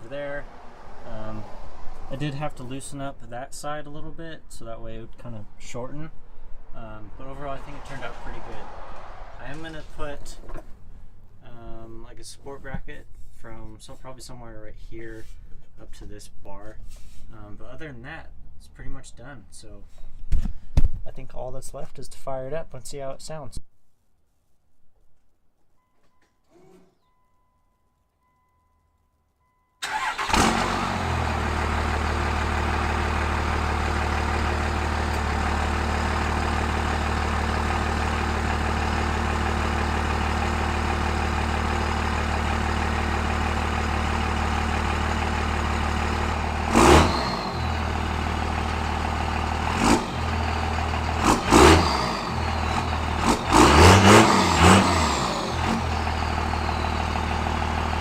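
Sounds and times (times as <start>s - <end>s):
diesel engine idling and revving: 0.0s - 11.9s, 29.8s - 58.0s.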